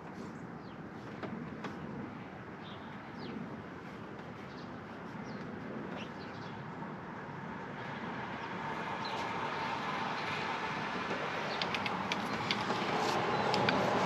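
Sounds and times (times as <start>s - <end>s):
outdoor background noise: 0.0s - 14.0s
birds chirping: 11.3s - 14.0s.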